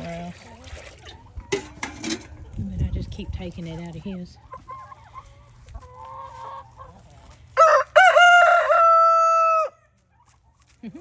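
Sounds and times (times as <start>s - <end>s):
chickens clucking: 0.0s - 11.0s
rooster crowing: 7.6s - 9.8s.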